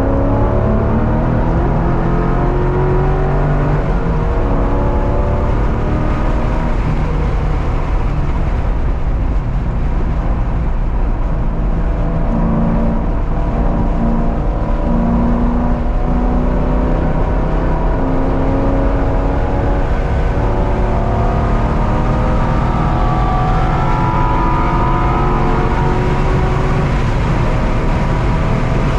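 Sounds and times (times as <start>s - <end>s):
car engine revving hard: 0.0s - 8.1s, 11.8s - 28.9s.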